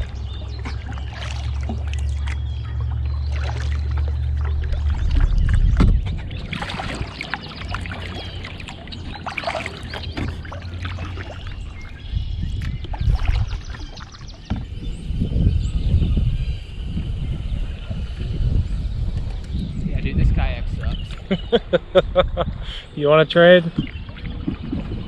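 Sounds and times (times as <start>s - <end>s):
water splashing around kayak: 0.0s - 17.1s, 23.2s - 25.0s
low rumble: 0.0s - 22.7s.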